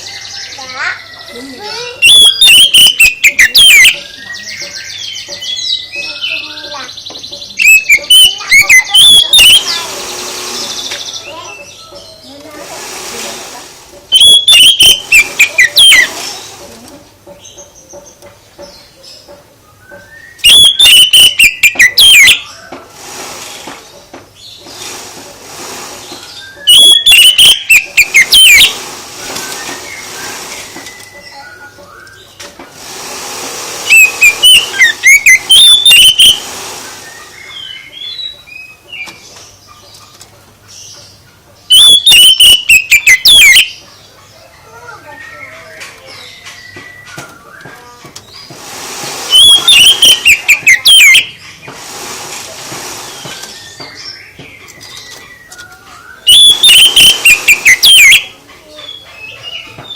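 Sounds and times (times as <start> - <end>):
faint bird chirps: 0.0 - 9.9, 18.6 - 22.8, 33.9 - 36.4, 53.2 - 59.9
songbird singing: 0.0 - 24.8, 26.0 - 32.8, 33.8 - 48.7, 49.3 - 51.9, 53.0 - 59.9.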